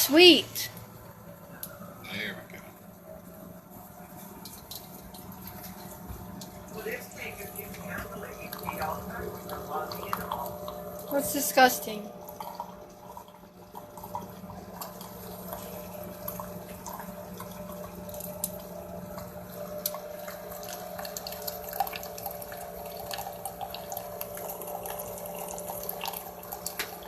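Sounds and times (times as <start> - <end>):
coffee maker pump humming: 0.0 - 27.0
coffee dripping into cup: 3.4 - 27.0
small pops and spatters: 4.3 - 6.6.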